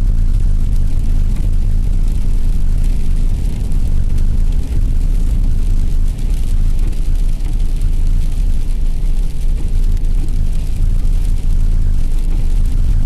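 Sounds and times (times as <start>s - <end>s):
car engine and tyres rumbling: 0.0s - 13.0s.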